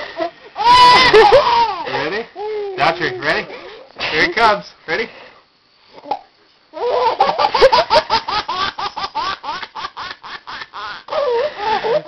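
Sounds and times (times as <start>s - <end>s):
baby laughing: 0.6s - 3.2s, 6.8s - 12.0s.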